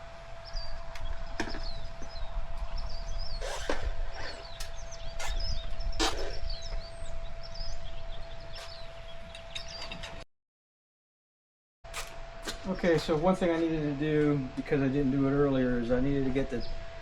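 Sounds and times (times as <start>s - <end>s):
steady low rumble: 0.0s - 9.7s
small birds chirping: 0.4s - 10.2s.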